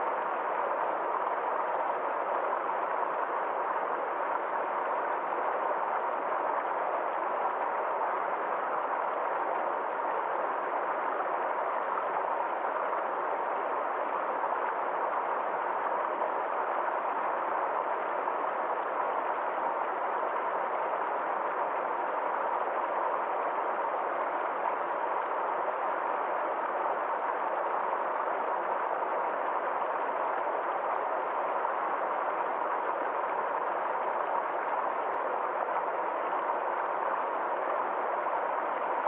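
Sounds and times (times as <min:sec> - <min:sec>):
stream water flowing: 0:00.0 - 0:39.0.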